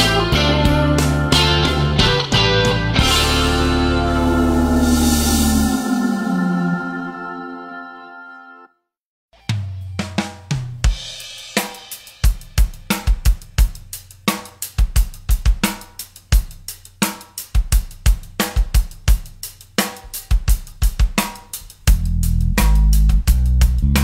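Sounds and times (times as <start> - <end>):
fast drum break: 9.5 - 24.0.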